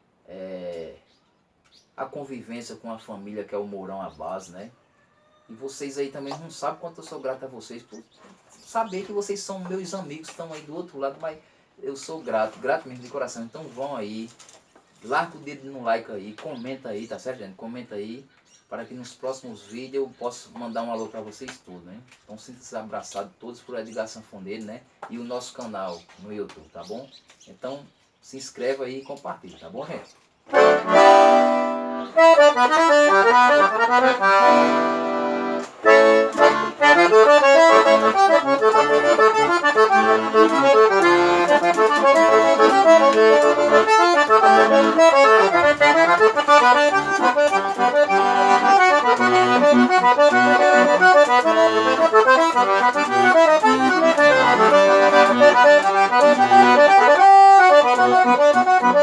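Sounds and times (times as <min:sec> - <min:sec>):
accordion playing lively tune: 0:30.5 - 0:59.0.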